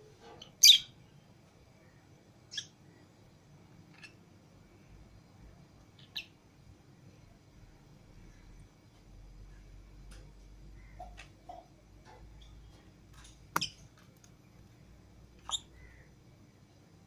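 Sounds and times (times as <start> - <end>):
lovebirds clicking and chirping: 3.9 - 4.2, 6.0 - 6.4, 10.1 - 14.4, 15.4 - 16.1
sharp bird calls: 15.4 - 16.2.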